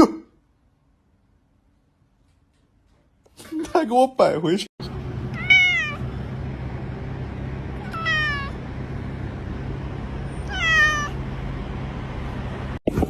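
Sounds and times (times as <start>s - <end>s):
steady low hum: 4.8s - 13.0s
cat meowing: 5.3s - 6.0s, 7.8s - 8.6s, 10.4s - 11.3s.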